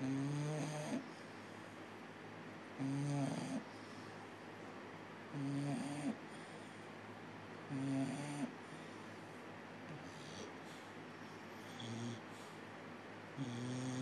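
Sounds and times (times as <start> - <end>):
dog snoring: 0.0 - 1.2, 2.8 - 4.1, 5.3 - 6.6, 7.7 - 9.0, 9.9 - 10.9, 11.6 - 12.6, 13.4 - 14.0
quiet breathing: 0.0 - 2.2, 2.8 - 14.0.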